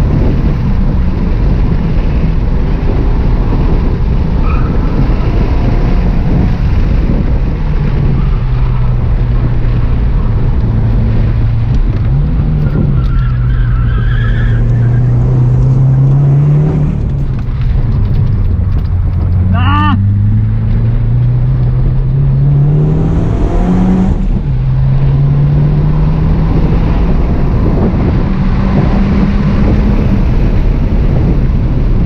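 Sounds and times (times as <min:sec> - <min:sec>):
car engine running hard: 0:00.0 - 0:32.0.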